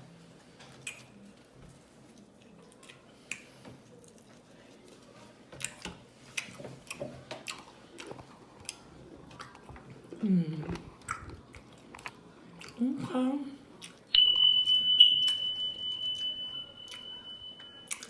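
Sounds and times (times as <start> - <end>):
person chewing food: 0.7 - 12.9, 13.7 - 14.1, 16.8 - 18.0.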